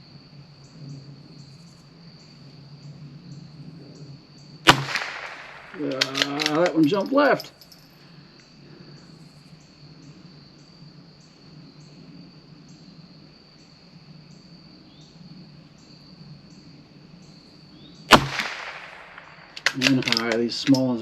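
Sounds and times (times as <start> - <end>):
insects chirring: 0.0 - 21.0
rifle shot crack: 4.7 - 7.4, 18.1 - 20.8.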